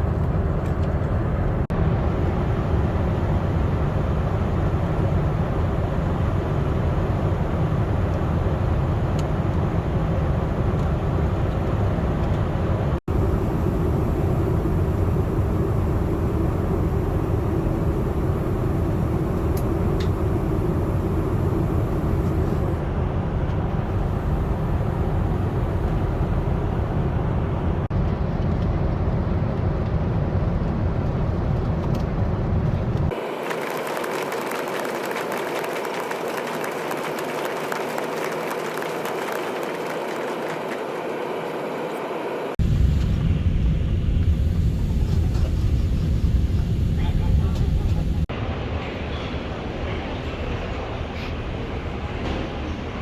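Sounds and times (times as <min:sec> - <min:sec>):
airliner cabin rumble: 0:00.0 - 0:53.0.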